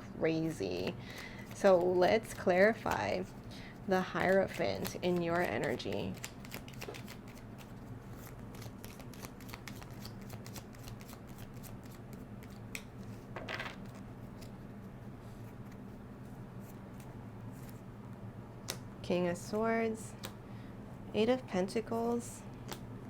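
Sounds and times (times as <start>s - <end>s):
steady low hum: 0.0s - 23.0s
cards being shuffled: 0.7s - 3.4s, 4.0s - 15.9s.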